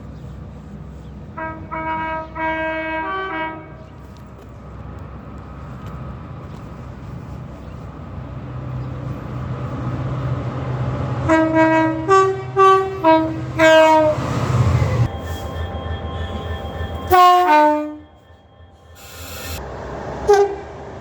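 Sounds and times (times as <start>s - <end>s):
train rumble: 0.0s - 21.0s
two-tone train horn blasts: 1.4s - 3.9s, 11.3s - 19.6s, 20.2s - 20.8s.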